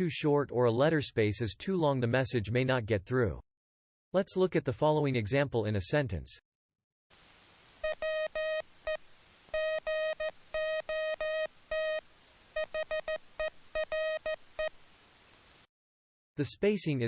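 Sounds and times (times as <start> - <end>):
faint hiss: 7.1 - 15.7
morse code beeps: 7.8 - 9.0, 9.6 - 12.0, 12.6 - 14.7.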